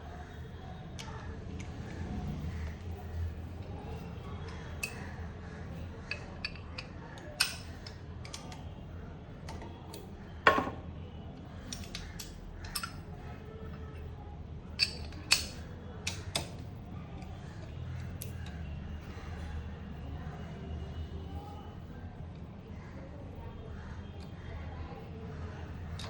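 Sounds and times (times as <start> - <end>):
metal tools clinking: 11.7 - 13.0, 14.8 - 15.6.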